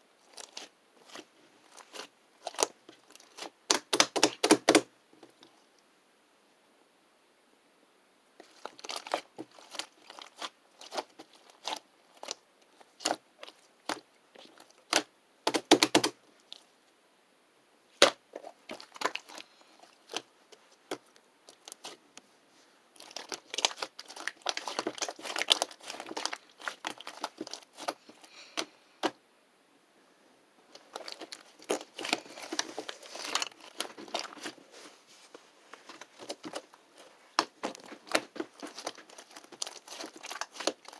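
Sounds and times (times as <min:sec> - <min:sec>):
slime squished by hand: 0:08.4 - 0:16.6, 0:20.9 - 0:22.0, 0:23.0 - 0:29.2, 0:37.3 - 0:40.9.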